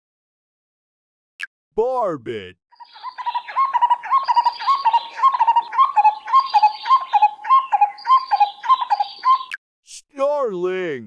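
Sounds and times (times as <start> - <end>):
bird repeated hooting call: 2.8 - 9.6.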